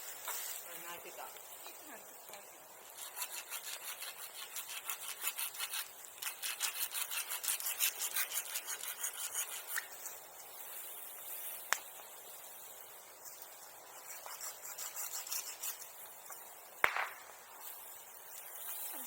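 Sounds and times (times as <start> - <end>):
hand saw cutting wood: 3.0 - 9.9, 14.1 - 15.8.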